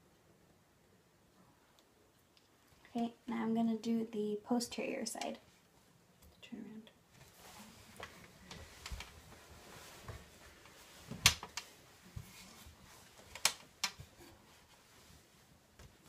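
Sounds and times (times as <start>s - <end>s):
faint rustling: 7.1s - 16.0s.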